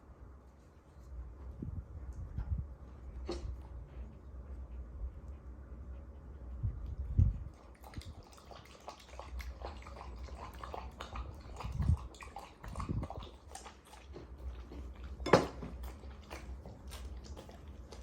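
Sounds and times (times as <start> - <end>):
dog eating: 6.7 - 18.0.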